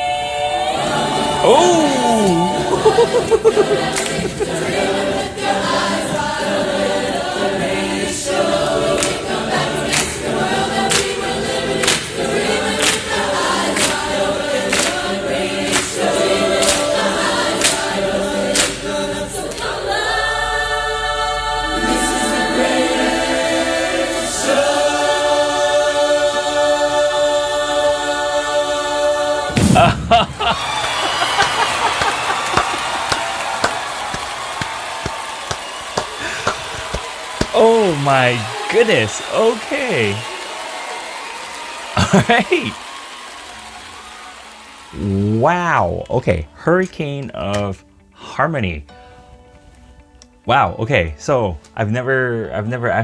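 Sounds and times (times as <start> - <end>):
chorus singing a cappella: 0.0 - 43.3
sharp beats: 30.4 - 34.8, 35.5 - 37.8.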